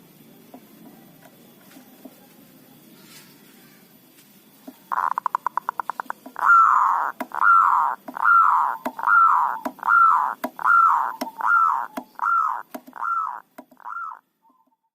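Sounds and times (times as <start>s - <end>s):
dove cooing: 4.6s - 14.9s.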